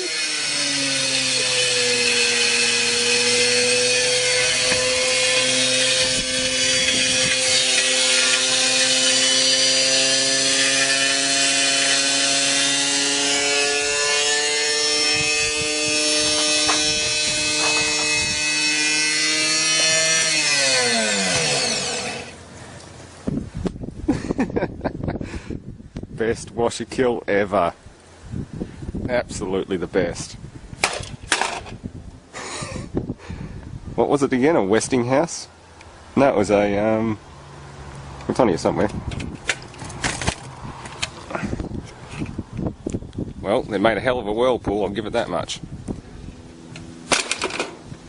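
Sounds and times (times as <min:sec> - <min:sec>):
rattling and knocks: 0:15.7 - 0:22.2.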